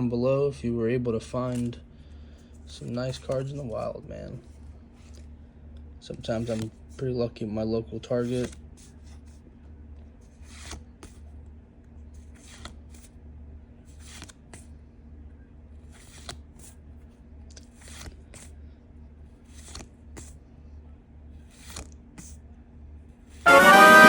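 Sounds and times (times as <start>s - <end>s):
cards sliding swish: 6.3s - 6.7s, 10.3s - 11.2s, 12.2s - 13.1s, 13.9s - 14.5s, 15.9s - 16.8s, 17.6s - 18.6s, 19.4s - 20.4s, 21.4s - 22.3s.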